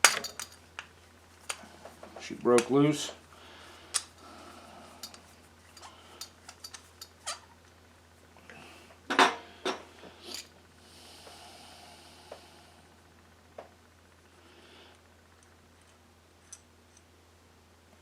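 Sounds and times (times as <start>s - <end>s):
small metal parts handled: 0.0s - 0.6s, 5.0s - 7.5s.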